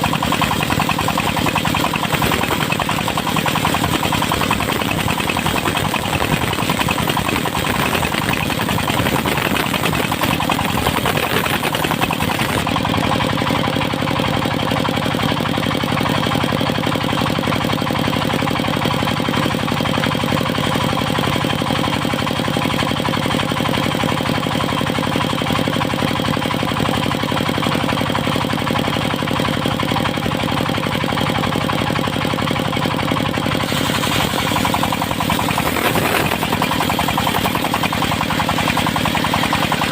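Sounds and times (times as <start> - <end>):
diesel engine driving sawmill: 0.0 - 39.9
hissy high sound: 33.6 - 37.8.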